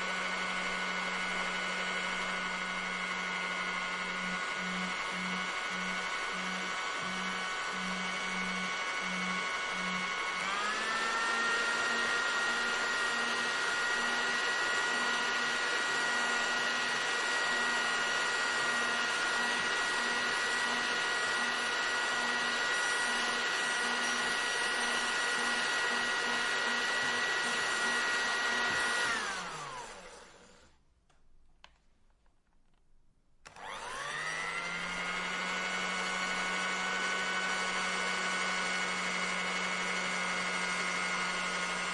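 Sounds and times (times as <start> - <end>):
hair dryer blowing: 0.0 - 30.8, 33.4 - 41.9.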